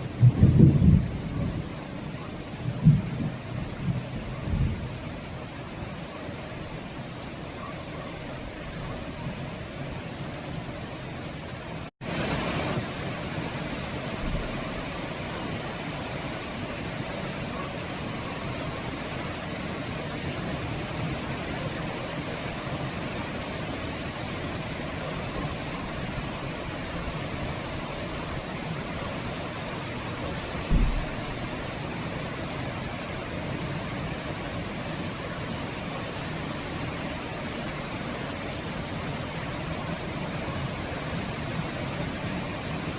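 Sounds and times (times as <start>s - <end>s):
steady rain: 0.0s - 42.9s
low thump: 30.7s - 31.4s.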